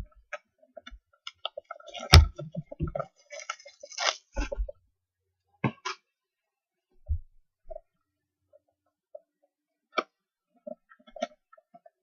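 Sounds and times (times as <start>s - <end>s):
plastic wrap crinkling: 3.2s - 4.6s.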